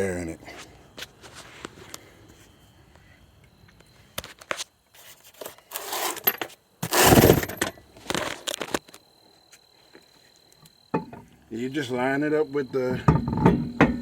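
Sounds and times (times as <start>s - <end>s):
metal clinks and scrapes: 5.0s - 8.3s
heavy thump of tire: 12.9s - 14.0s.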